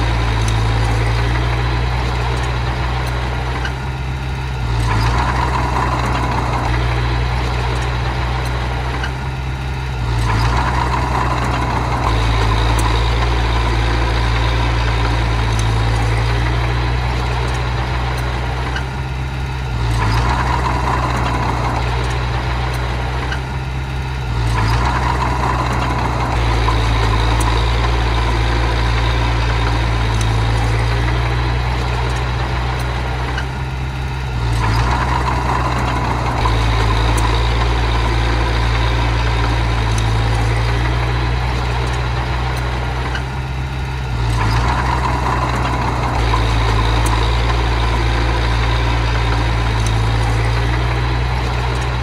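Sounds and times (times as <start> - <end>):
heavy machine engine running: 0.0 - 52.0.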